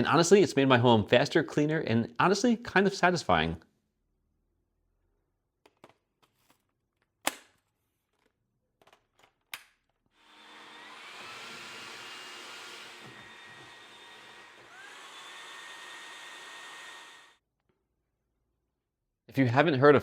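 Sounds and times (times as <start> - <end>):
stick vacuum motor whining: 10.2 - 17.4.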